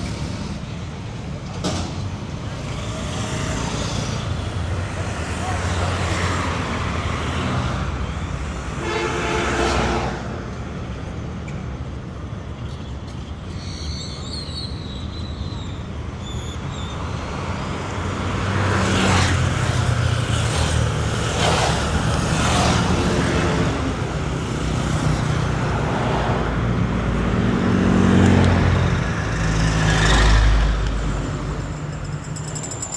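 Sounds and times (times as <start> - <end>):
vehicle engines passing: 0.0 - 13.1, 16.9 - 32.9
car horn toot: 8.8 - 10.0.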